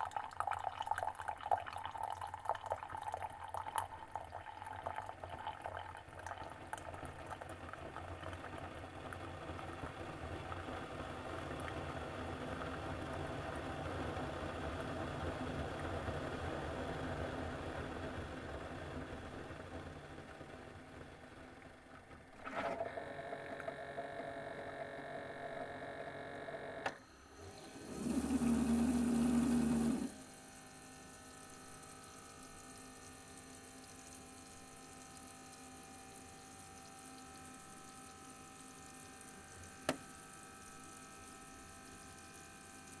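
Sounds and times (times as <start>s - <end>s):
coffee maker brewing: 0.0s - 43.0s
faint hum: 0.0s - 43.0s
low buzz: 21.5s - 35.6s.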